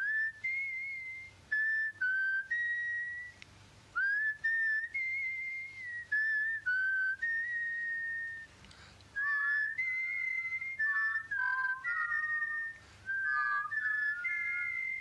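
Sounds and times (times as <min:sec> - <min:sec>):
person whistling a slow tune: 0:00.0 - 0:03.4, 0:04.0 - 0:15.0.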